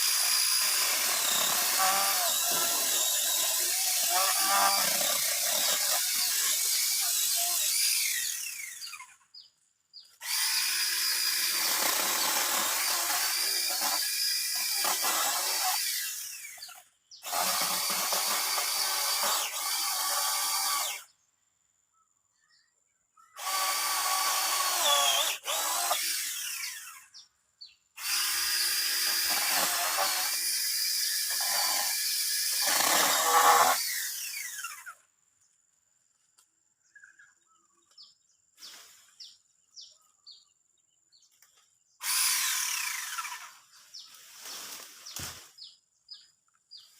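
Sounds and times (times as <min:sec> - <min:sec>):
mini chainsaw cutting wood: 0:00.0 - 0:09.2, 0:10.2 - 0:21.1, 0:23.4 - 0:27.2, 0:28.0 - 0:35.1, 0:42.0 - 0:45.6.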